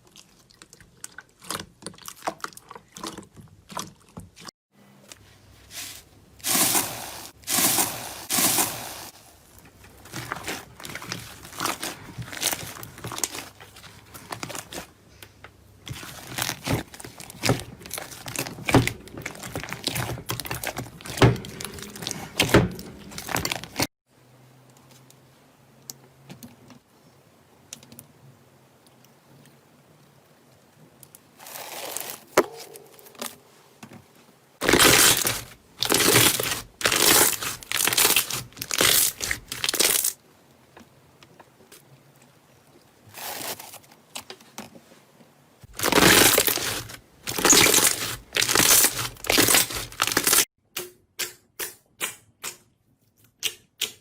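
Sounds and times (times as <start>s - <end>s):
slime crackling and popping: 34.6s - 40.2s, 45.7s - 50.5s.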